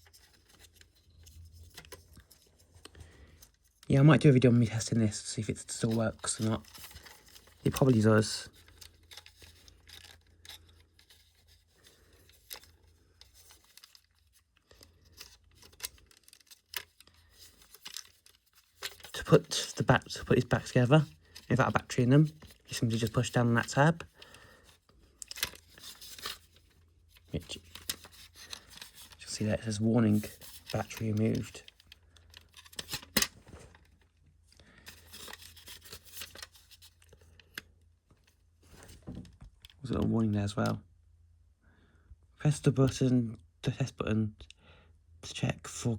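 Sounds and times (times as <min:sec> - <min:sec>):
plastic casing clicks and rustles: 0:06.2 - 0:11.4, 0:12.1 - 0:19.7, 0:25.2 - 0:29.2, 0:30.2 - 0:34.0.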